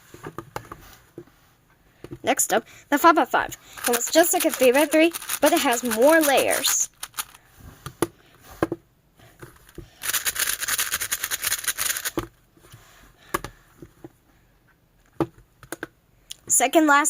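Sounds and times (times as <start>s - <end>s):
puzzle cube layer turns clicking: 3.6s - 7.4s, 9.6s - 12.2s.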